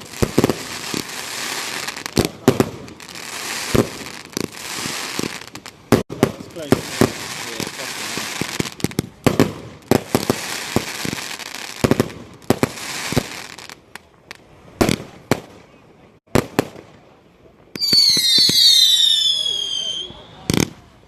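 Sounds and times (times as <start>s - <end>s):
fireworks bangs: 0.0s - 13.8s, 14.7s - 17.0s, 17.8s - 21.0s
fireworks crackling: 0.0s - 17.0s, 17.8s - 21.0s
shrill falling whistles: 18.0s - 20.5s.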